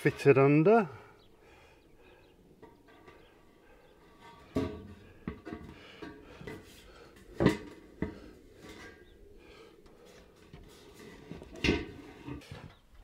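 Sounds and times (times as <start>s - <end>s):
siding pieces knocking and clanking: 4.1s - 6.7s, 7.3s - 9.0s.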